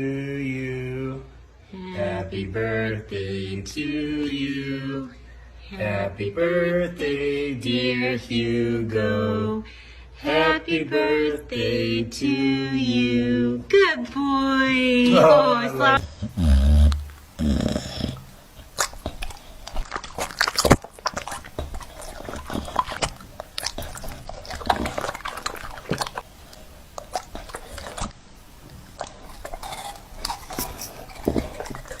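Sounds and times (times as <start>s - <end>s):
dog chewing and eating: 16.0s - 32.0s.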